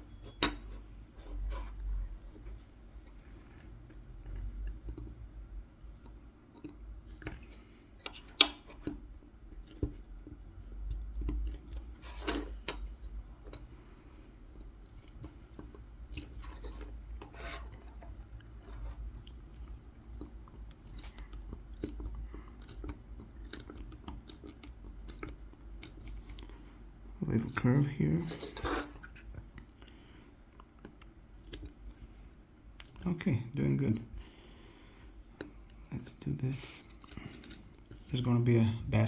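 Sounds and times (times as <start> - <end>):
knife scratching wood: 16.2 - 19.0, 28.2 - 29.2.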